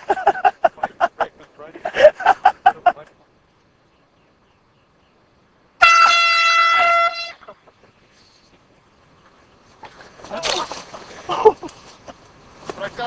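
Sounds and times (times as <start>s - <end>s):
air horn blast: 5.8s - 7.6s.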